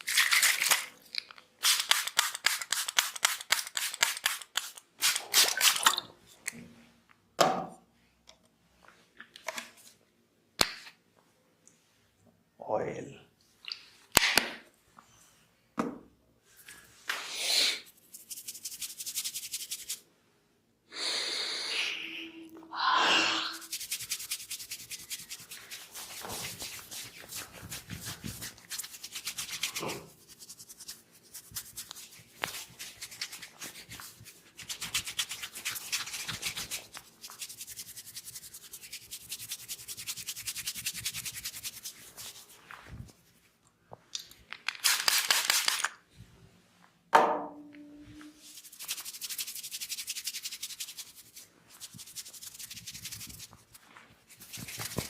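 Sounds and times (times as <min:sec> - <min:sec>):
hands rubbing hair and scalp: 0:01.6 - 0:05.9, 0:17.9 - 0:20.0, 0:23.6 - 0:43.6, 0:48.3 - 0:55.0.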